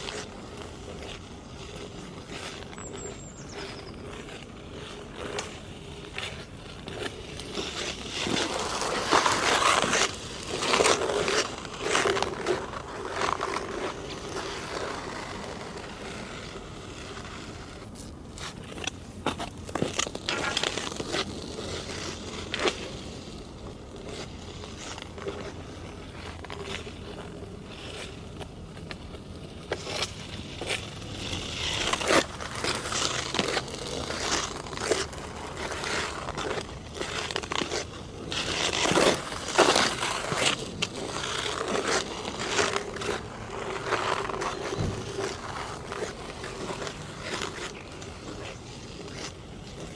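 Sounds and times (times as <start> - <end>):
crisp skate clicks: 0.0 - 49.9
ice skates scraping on ice: 0.0 - 49.9.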